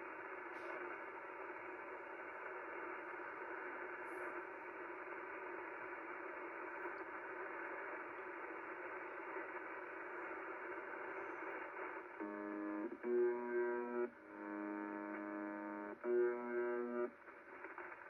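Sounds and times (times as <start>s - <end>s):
faint radio tones: 0.0s - 18.0s
radio static hiss: 0.0s - 18.0s
loud harsh radio buzz: 12.2s - 17.1s.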